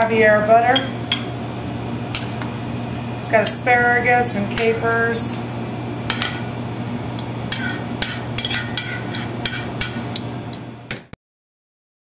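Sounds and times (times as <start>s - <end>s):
steady low hum: 0.0s - 11.2s
utensils clinking on dishes: 7.5s - 10.3s.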